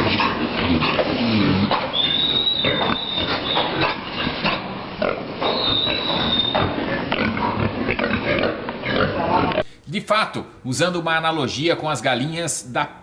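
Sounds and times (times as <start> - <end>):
pigs coughing: 0.0 - 9.8.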